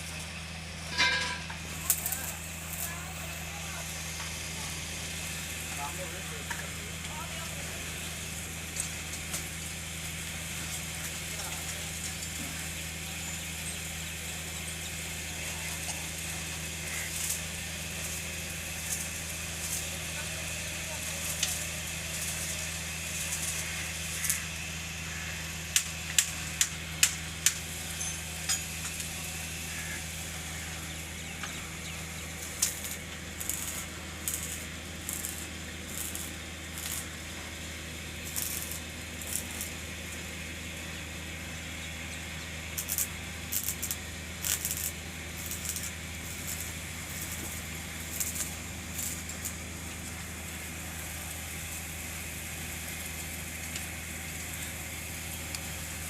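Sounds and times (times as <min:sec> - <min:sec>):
arc welding sizzle: 0:00.0 - 0:56.0
low electrical hum: 0:00.0 - 0:56.0
metallic clinks of iron pieces: 0:00.9 - 0:01.6.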